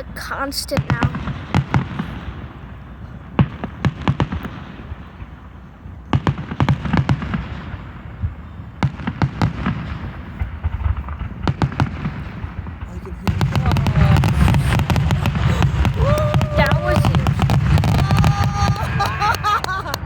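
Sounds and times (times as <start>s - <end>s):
aerial firework bursts: 0.0s - 20.0s.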